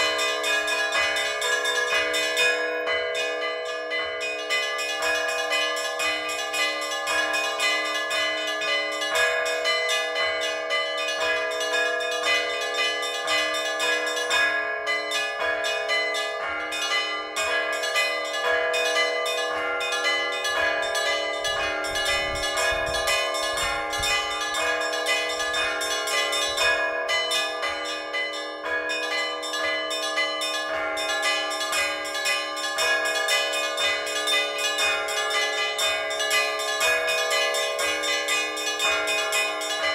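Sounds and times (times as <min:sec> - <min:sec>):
church bells rapid peal: 0:00.0 - 0:39.9
low bell ringing: 0:15.8 - 0:39.9.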